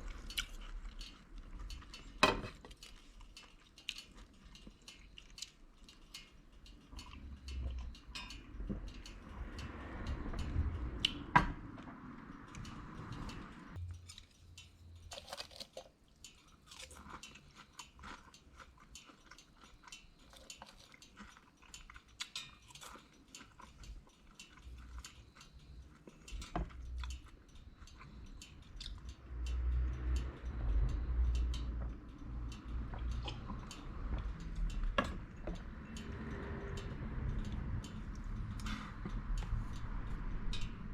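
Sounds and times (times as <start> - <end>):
person chewing crunchy fish: 0.0 - 8.0, 13.8 - 29.1.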